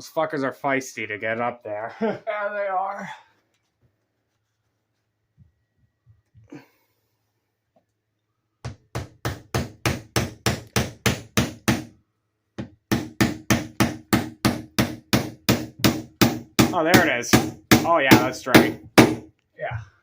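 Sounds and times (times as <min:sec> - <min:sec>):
hammer driving nail into wood: 0:08.7 - 0:11.9, 0:12.6 - 0:19.3.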